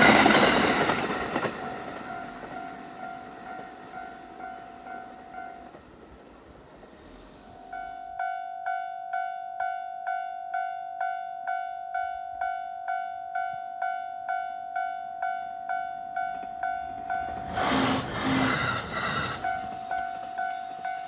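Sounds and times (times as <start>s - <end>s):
electric train rushing past: 0.0s - 8.1s, 16.3s - 21.0s
level crossing warning bell: 7.7s - 17.6s.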